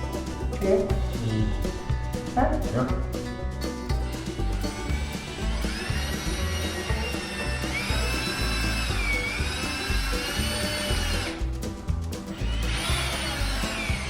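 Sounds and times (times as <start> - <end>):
background music with steady beat: 0.0 - 14.0
power drill driving screws: 4.9 - 11.4, 12.3 - 14.0.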